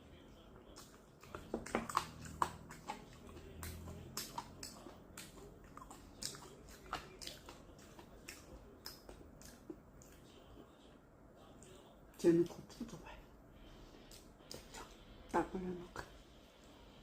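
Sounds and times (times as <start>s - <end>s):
chewing chicken wings: 0.1s - 10.8s.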